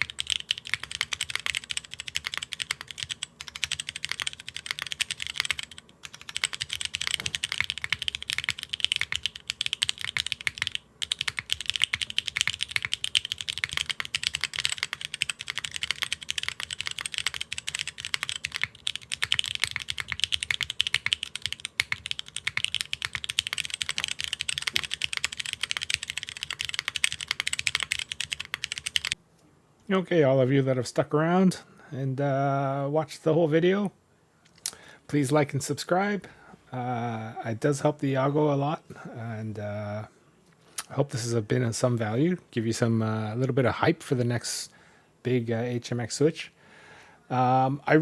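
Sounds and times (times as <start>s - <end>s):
mechanical keyboard typing: 0.0s - 29.2s.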